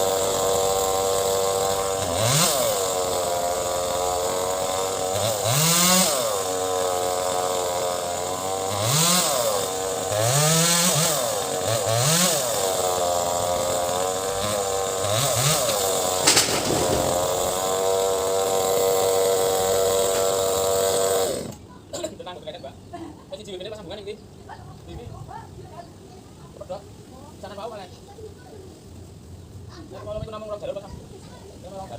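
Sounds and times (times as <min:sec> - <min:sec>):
chainsaw revving: 0:00.0 - 0:21.6
sharp crack: 0:15.7 - 0:18.0.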